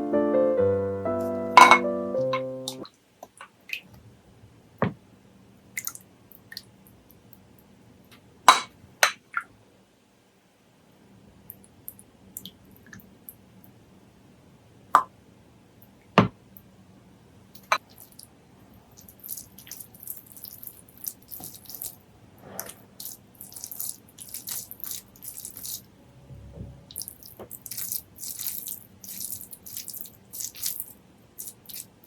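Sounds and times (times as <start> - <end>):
dishes and utensils clinking: 1.6 - 1.9.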